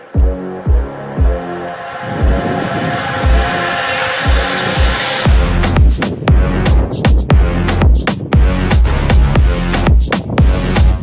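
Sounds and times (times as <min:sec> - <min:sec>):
electronic dance music: 0:00.0 - 0:11.0
heavy kick drum: 0:00.2 - 0:01.4, 0:02.2 - 0:02.6, 0:03.2 - 0:03.5, 0:04.2 - 0:11.0
sharp snare or hi-hat hits: 0:04.3 - 0:11.0.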